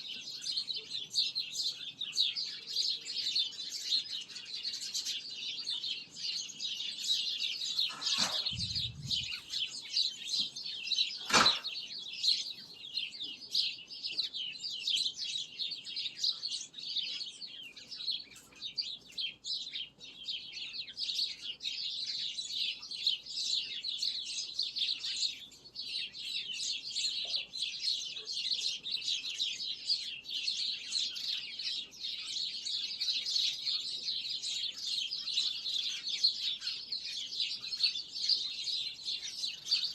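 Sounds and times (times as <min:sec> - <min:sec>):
small birds chirping: 0:00.0 - 0:39.9
low thud: 0:08.0 - 0:09.4
sharp click: 0:11.2 - 0:11.7.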